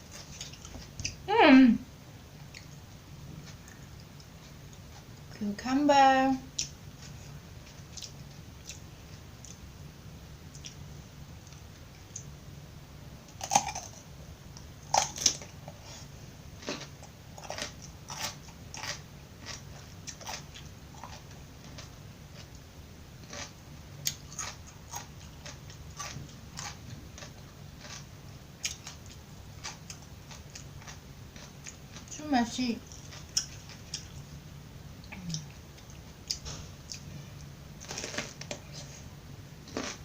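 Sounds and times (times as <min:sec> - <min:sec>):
chewing crunches: 0:13.3 - 0:14.1, 0:14.8 - 0:22.6, 0:23.2 - 0:32.1, 0:32.8 - 0:34.3, 0:35.0 - 0:38.9, 0:39.6 - 0:40.0.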